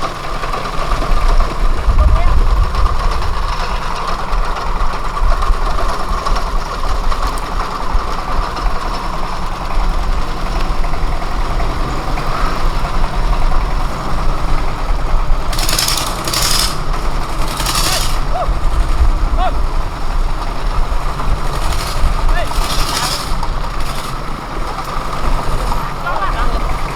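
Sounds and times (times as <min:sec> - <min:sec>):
heavy engine rumbling: 0:00.0 - 0:26.9
hissing bursts: 0:14.0 - 0:26.9.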